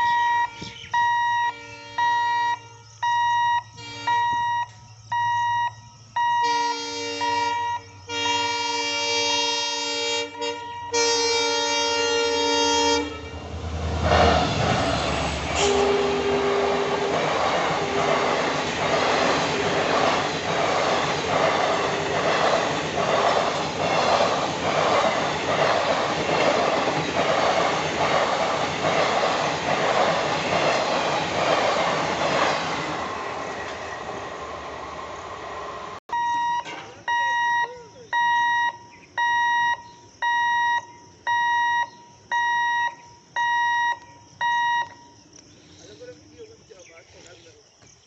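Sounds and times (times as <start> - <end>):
train horn: 1.5 - 2.9, 3.8 - 4.2, 6.4 - 14.3, 15.5 - 18.6
locomotive rumbling past: 7.0 - 37.2.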